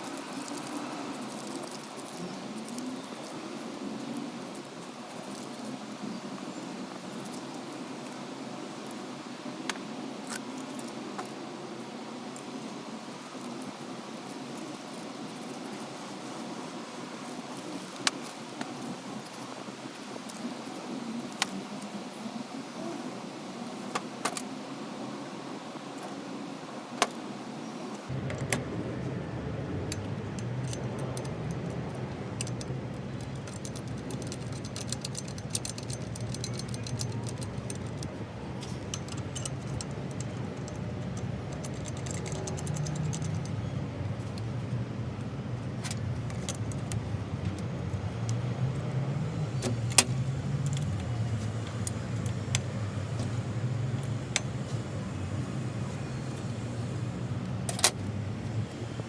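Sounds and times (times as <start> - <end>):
metallic ticks and rattles: 29.9 - 43.6.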